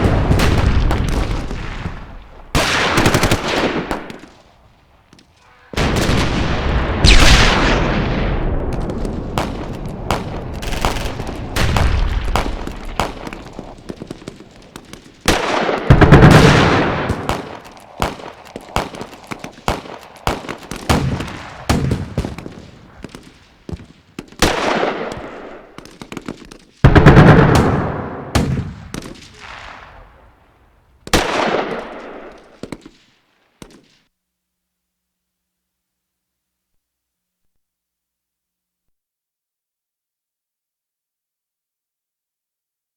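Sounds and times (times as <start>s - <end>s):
heavy blasts: 0.0s - 4.6s, 5.3s - 25.3s
rifle shots: 0.0s - 30.4s, 31.0s - 34.0s
machine-gun bursts: 2.5s - 4.4s, 9.3s - 28.0s.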